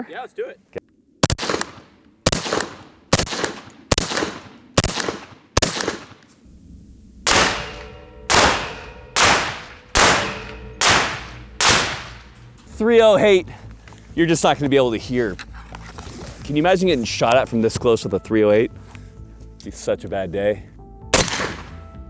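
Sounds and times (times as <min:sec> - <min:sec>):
rifle shots: 0:01.2 - 0:06.3, 0:07.2 - 0:12.6, 0:21.2 - 0:21.8
metallic ring: 0:07.3 - 0:12.7.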